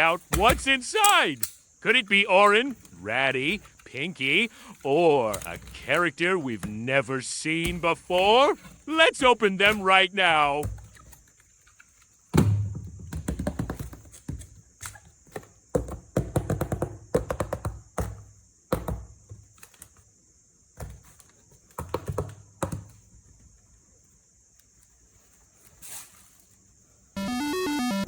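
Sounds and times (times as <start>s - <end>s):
box packaging being handled: 2.0s - 7.0s.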